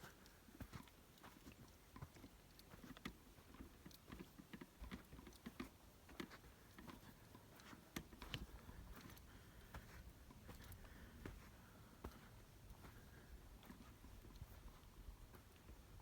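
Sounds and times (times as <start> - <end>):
small gritty clicks: 0.2 - 11.4
footsteps crunching in sand: 6.4 - 16.0.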